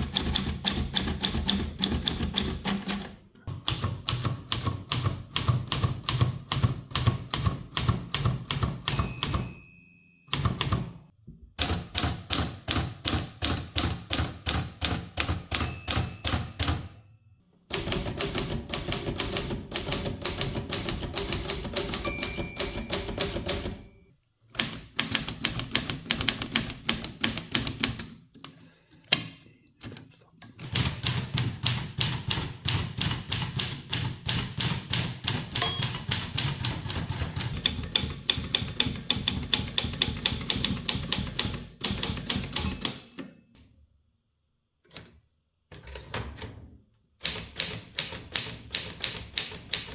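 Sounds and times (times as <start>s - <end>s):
typewriter bell ding: 8.9s - 10.8s, 15.4s - 17.2s, 21.8s - 24.1s, 35.5s - 37.6s, 42.5s - 43.2s
typewriter keys clattering: 17.8s - 23.8s, 30.6s - 43.0s.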